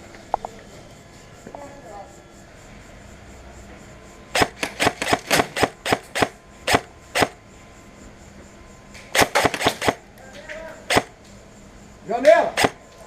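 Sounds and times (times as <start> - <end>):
airsoft gun shots: 4.4 - 7.4, 9.1 - 10.0, 10.9 - 11.2, 12.5 - 12.8.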